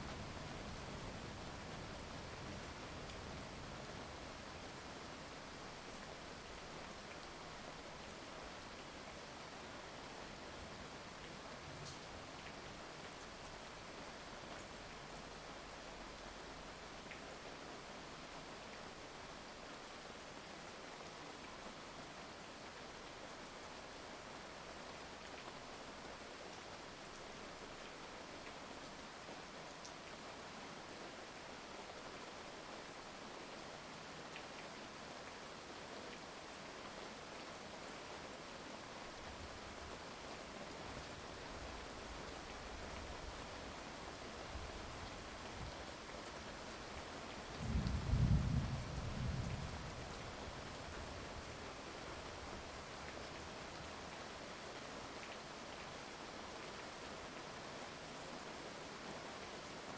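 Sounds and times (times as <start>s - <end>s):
steady rain hiss: 0.0s - 59.9s
faint raindrop ticks: 8.5s - 24.0s, 38.9s - 57.6s.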